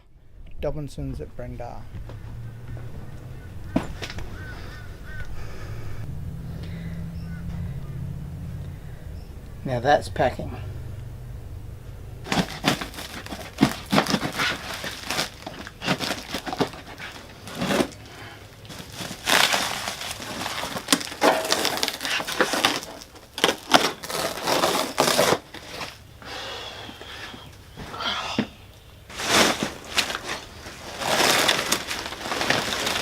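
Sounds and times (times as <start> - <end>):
packing material crackling: 12.2 - 26.1, 29.0 - 33.0.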